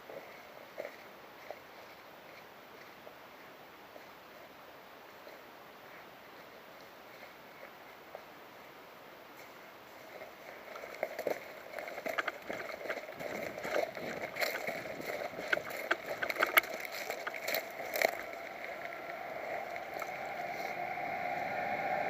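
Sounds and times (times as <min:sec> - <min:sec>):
rustling with sharp crackles: 0:09.3 - 0:20.8.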